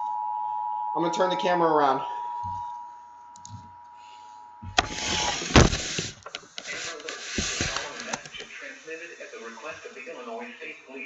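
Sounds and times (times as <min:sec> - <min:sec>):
camera handling noise: 0:04.8 - 0:08.5.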